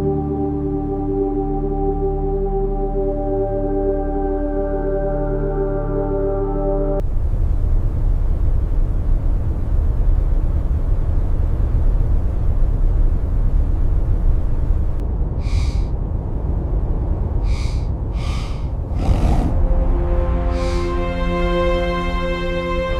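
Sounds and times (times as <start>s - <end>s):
blizzard wind blowing: 7.0s - 22.9s
short animal calls: 15.4s - 15.9s, 17.5s - 19.5s.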